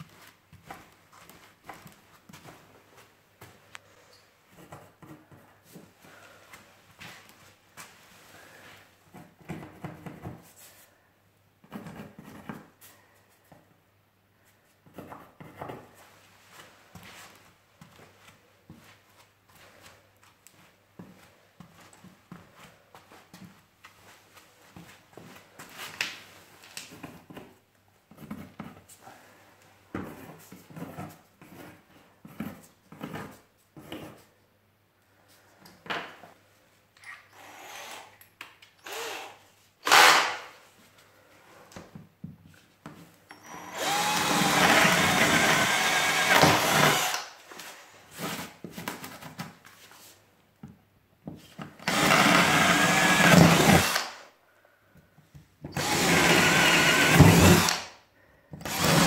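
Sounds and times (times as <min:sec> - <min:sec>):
power drill motor whine: 0:37.3 - 0:38.1, 0:38.8 - 0:40.4, 0:43.3 - 0:47.3, 0:51.8 - 0:54.2, 0:55.7 - 0:57.9, 0:58.6 - 0:59.0.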